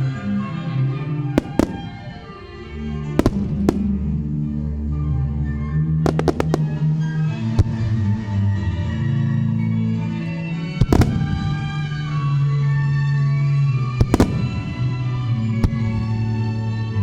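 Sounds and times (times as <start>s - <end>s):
music with slow sustained notes: 0.0s - 17.0s
firework shells bursting: 0.1s - 4.6s, 6.1s - 8.3s, 9.2s - 12.5s, 14.0s - 16.4s.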